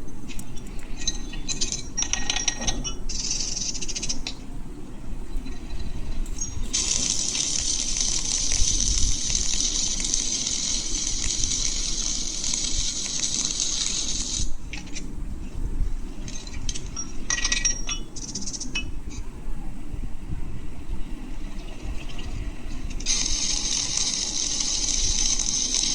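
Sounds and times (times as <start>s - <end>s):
welding arc hissing and crackling: 6.6s - 15.0s, 22.8s - 25.9s.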